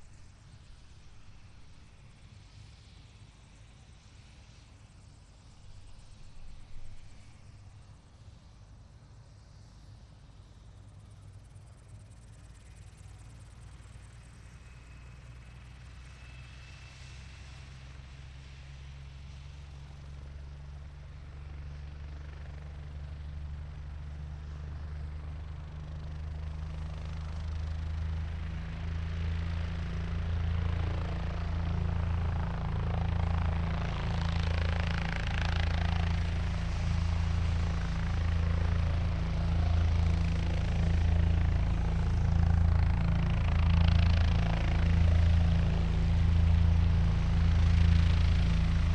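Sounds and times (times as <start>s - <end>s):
helicopter engine and rotor: 24.4s - 48.9s.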